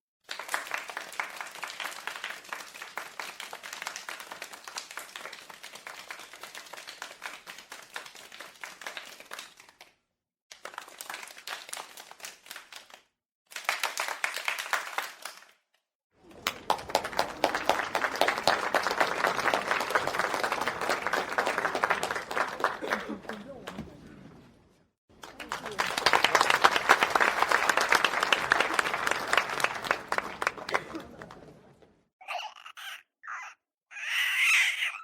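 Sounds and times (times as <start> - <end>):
crowd applause: 0.3 - 9.4, 16.2 - 24.1, 25.1 - 32.0.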